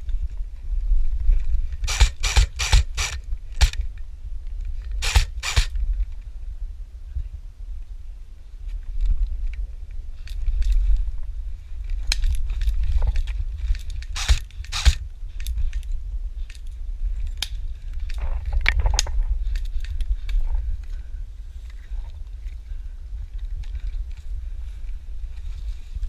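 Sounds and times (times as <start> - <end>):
wind buffeting microphone: 0.0 - 26.0
sharp clicks and crackles: 1.7 - 6.2, 11.9 - 20.4
loud cracks: 1.8 - 3.8, 5.0 - 5.8, 14.2 - 15.0.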